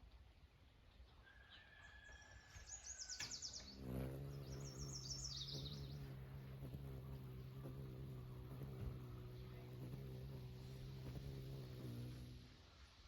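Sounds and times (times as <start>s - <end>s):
songbird trilling: 3.3s - 12.0s
steady low hum: 3.7s - 12.6s.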